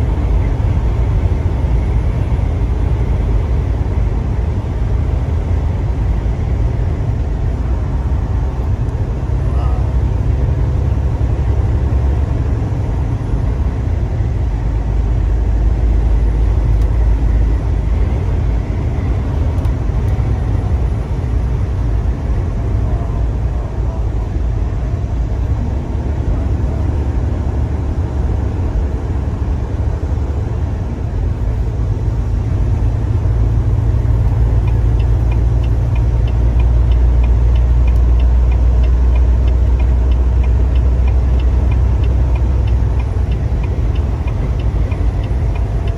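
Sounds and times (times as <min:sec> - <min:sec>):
car driving rumble: 0:00.0 - 0:45.9
fast regular ticking: 0:34.5 - 0:45.9.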